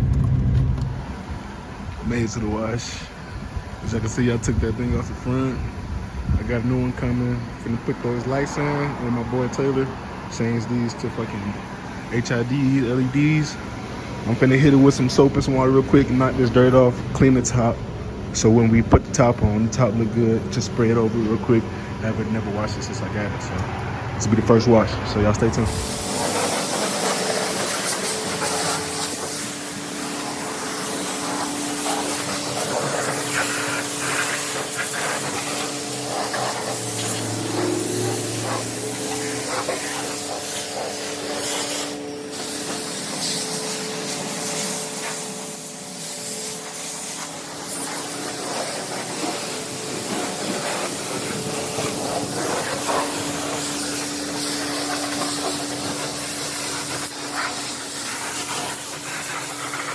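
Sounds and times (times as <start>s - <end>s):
constant hum: 0.0s - 59.9s
pressure wand spraying water: 25.4s - 59.9s.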